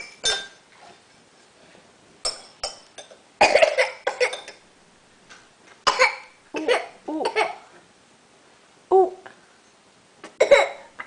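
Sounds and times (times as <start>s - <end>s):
baby coughing: 3.4s - 4.5s, 5.9s - 7.6s, 10.4s - 10.9s.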